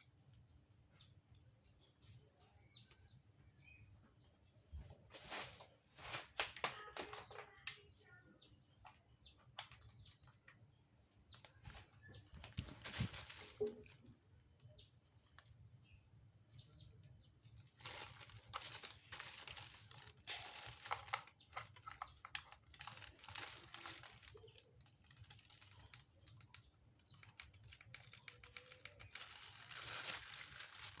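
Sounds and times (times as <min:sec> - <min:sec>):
plastic and paper crinkling: 0:05.1 - 0:07.9, 0:11.5 - 0:14.1, 0:17.6 - 0:31.0.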